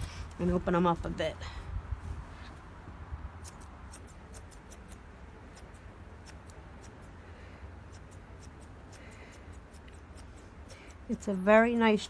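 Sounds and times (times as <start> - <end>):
grooming shears snipping: 3.4 - 7.2, 7.8 - 12.0.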